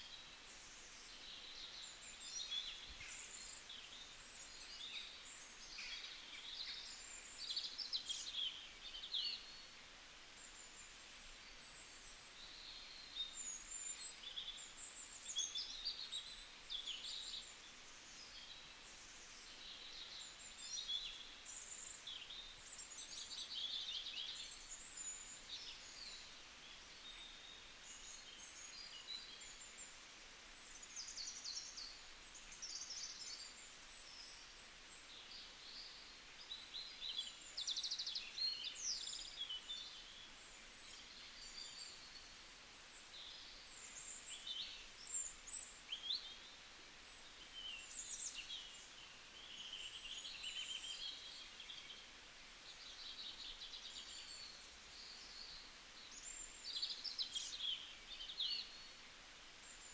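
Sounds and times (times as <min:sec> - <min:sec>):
faint background hiss: 0:00.0 - 0:59.9
small birds chirping and trilling: 0:00.0 - 0:59.9.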